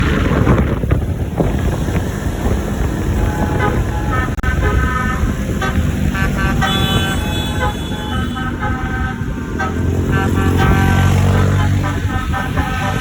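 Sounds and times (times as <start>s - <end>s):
road engine and wind rumble: 0.0s - 13.0s
bus horn playing short notes: 3.2s - 13.0s.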